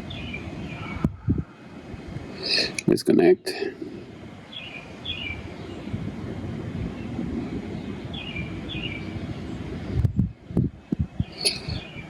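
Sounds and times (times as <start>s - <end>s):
steady low rumble: 0.0s - 12.0s
bird chirping: 4.4s - 5.9s, 7.8s - 9.6s, 11.0s - 12.0s.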